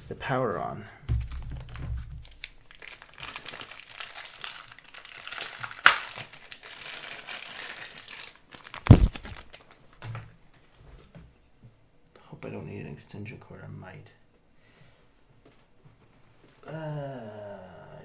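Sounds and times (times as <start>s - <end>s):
heavy thump: 1.1s - 2.3s
plastic packaging crinkling: 1.2s - 10.1s.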